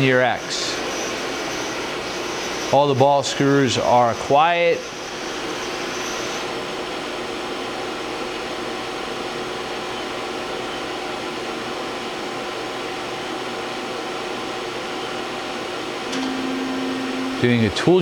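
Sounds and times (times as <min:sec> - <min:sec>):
faint high whine: 0:00.0 - 0:07.6, 0:16.0 - 0:18.0
machining center whirring hum: 0:00.0 - 0:18.0.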